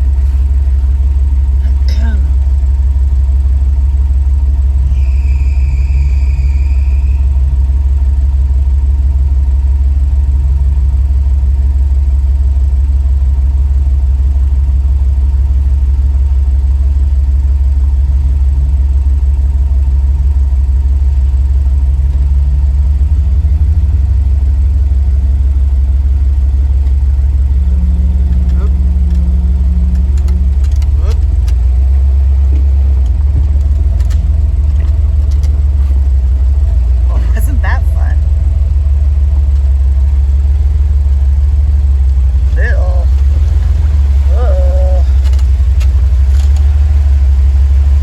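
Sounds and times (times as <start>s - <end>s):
vehicle engine low rumble: 0.0s - 48.0s
brief high squeal: 4.8s - 7.4s.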